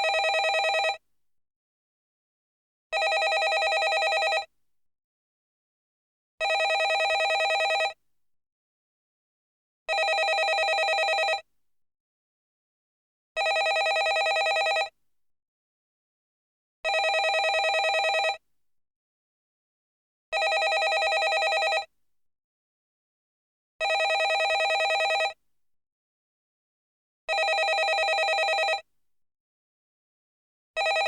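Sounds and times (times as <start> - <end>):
landline telephone ringing: 0.0 - 1.0, 3.0 - 4.5, 6.4 - 8.0, 9.9 - 11.4, 13.4 - 14.9, 16.9 - 18.4, 20.4 - 21.9, 23.8 - 25.4, 27.3 - 28.8, 30.8 - 31.0.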